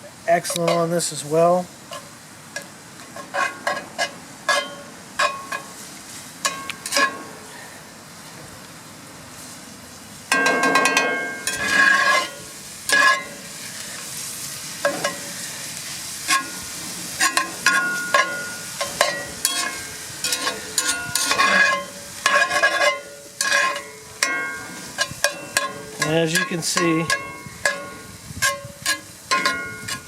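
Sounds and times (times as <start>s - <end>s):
meat sizzling: 0.0s - 8.2s, 8.8s - 30.0s
spatula scraping pan: 3.0s - 7.3s, 10.4s - 30.0s.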